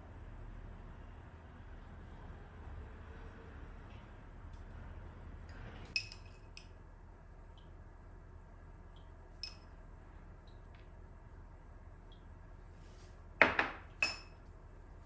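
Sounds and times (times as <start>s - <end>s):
kitchenware clinking: 6.0s - 6.5s, 13.4s - 14.4s.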